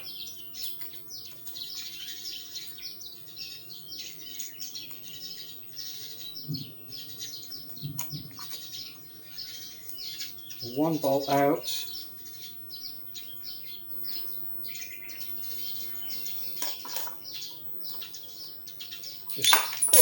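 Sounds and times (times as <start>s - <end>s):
birds chirping: 0.0s - 20.0s.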